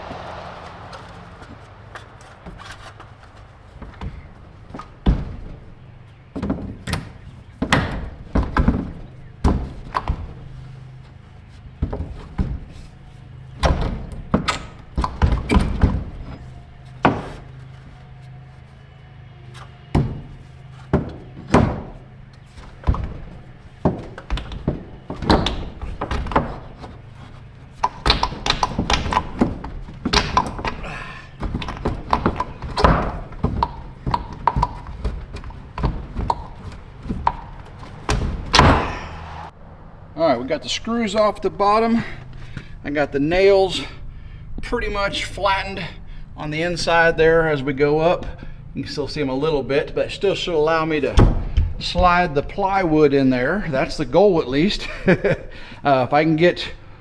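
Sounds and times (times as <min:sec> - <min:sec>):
dull thuds and knocks: 0:00.0 - 0:39.6, 0:51.1 - 0:54.0.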